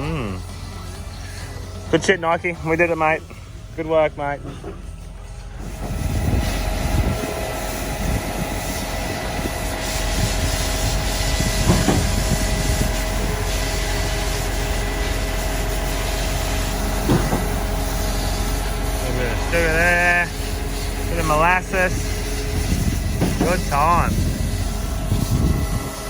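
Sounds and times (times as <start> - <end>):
machine engine hum: 0.0 - 26.0
steady whine: 0.0 - 26.0
hiss: 5.6 - 26.0.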